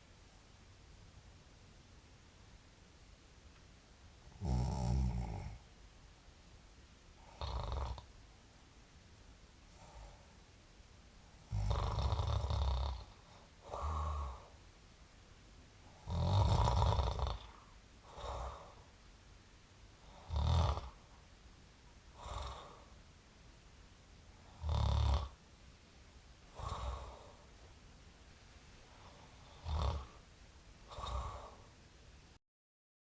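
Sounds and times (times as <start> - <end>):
person snoring: 4.4 - 5.6, 7.2 - 8.1, 11.4 - 14.6, 15.9 - 18.8, 20.0 - 21.0, 22.2 - 23.0, 24.4 - 25.4, 26.5 - 27.5, 28.9 - 30.2, 30.9 - 31.7.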